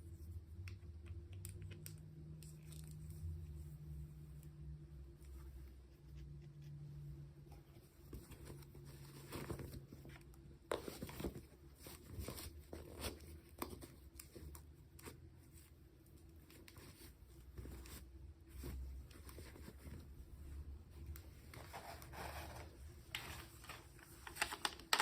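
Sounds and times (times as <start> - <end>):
small clicks and taps: 0.6 - 3.1
toy packaging rustling: 21.8 - 25.0.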